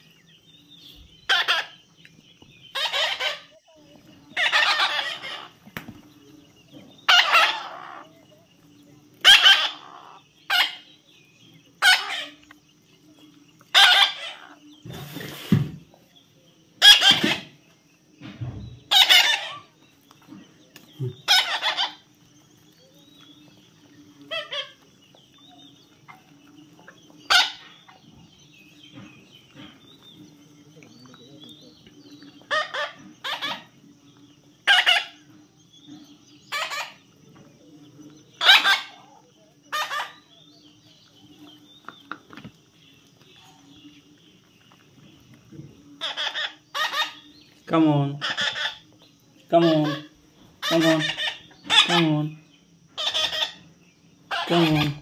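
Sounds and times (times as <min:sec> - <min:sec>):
parrot squawking: 0:01.3 - 0:01.8, 0:02.7 - 0:03.6, 0:04.4 - 0:05.6, 0:07.1 - 0:08.1, 0:09.2 - 0:10.9, 0:11.8 - 0:12.4, 0:13.7 - 0:14.6, 0:16.8 - 0:17.5, 0:18.9 - 0:19.7, 0:21.2 - 0:22.0, 0:24.3 - 0:24.8, 0:27.3 - 0:27.7, 0:32.5 - 0:33.7, 0:34.6 - 0:35.2, 0:36.5 - 0:37.0, 0:38.4 - 0:39.0, 0:39.7 - 0:40.3, 0:46.0 - 0:47.3, 0:48.2 - 0:48.8, 0:49.6 - 0:52.1, 0:53.0 - 0:53.6, 0:54.3 - 0:55.0.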